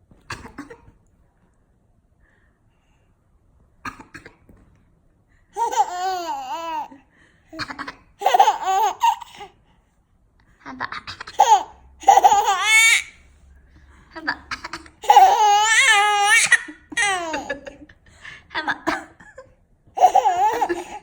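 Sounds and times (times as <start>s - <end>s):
baby laughing: 5.6s - 7.0s, 7.6s - 9.5s, 11.1s - 13.2s, 14.3s - 17.9s, 20.0s - 21.0s.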